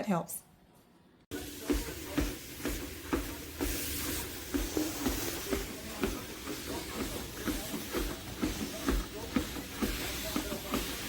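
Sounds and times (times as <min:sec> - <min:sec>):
treadmill motor hum and hiss: 0:01.3 - 0:11.0
treadmill thudding: 0:01.3 - 0:11.0.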